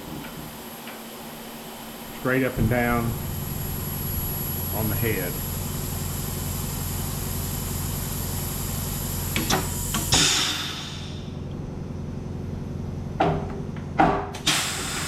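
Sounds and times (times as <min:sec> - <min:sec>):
machine hum: 0:00.0 - 0:14.3
hiss: 0:09.4 - 0:11.3, 0:14.4 - 0:15.0.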